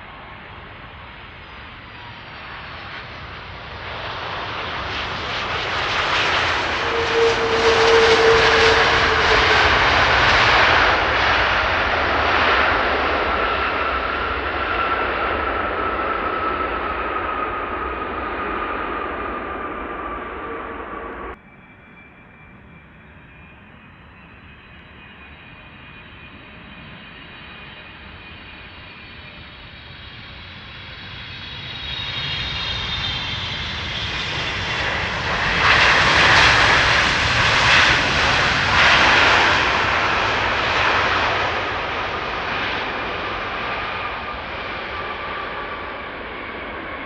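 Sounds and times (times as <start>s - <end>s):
jet airliner passing with whining fans: 0.0s - 47.0s.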